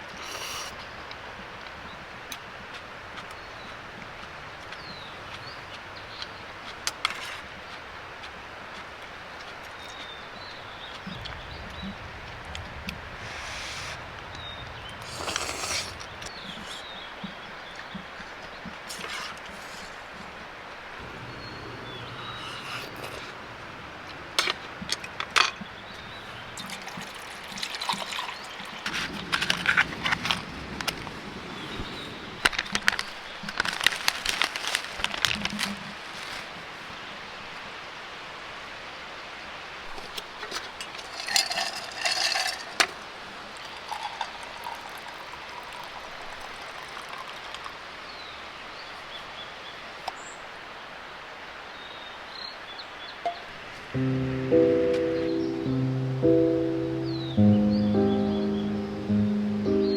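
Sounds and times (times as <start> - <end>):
mountain stream flowing: 0.8 - 35.2, 36.0 - 59.9
clicks and clatters of handling: 32.4 - 36.4, 40.0 - 43.1.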